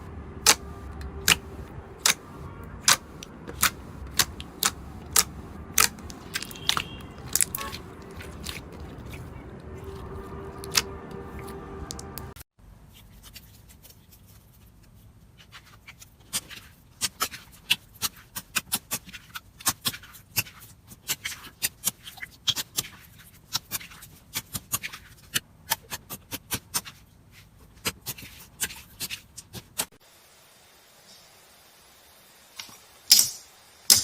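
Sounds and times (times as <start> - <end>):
slime clicking and popping: 0.4 - 10.0, 10.6 - 10.9.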